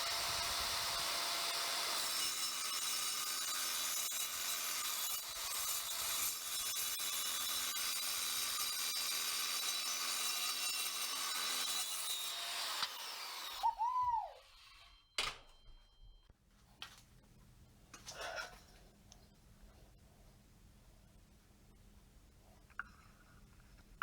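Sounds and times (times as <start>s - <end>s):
circular saw cutting steel: 0.0s - 15.2s.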